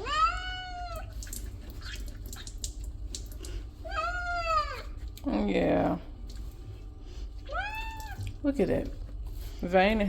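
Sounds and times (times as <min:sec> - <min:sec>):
cat meowing: 0:00.0 - 0:01.1, 0:03.9 - 0:04.9, 0:07.5 - 0:08.2
faint drips: 0:00.3 - 0:09.8.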